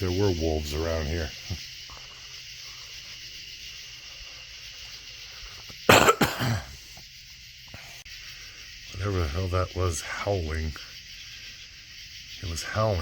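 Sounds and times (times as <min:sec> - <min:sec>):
night insects hissing: 0:00.0 - 0:13.0
person coughing and clearing throat: 0:05.9 - 0:06.7.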